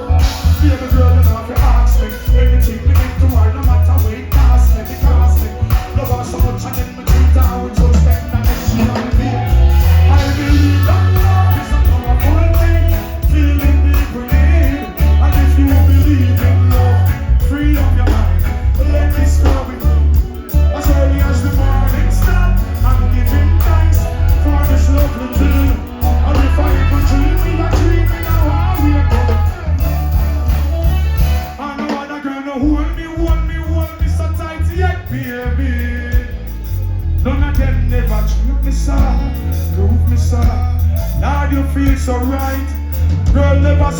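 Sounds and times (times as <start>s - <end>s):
deep heavy bassline: 0.0s - 31.7s, 32.6s - 43.9s
live reggae band playing: 0.0s - 43.9s.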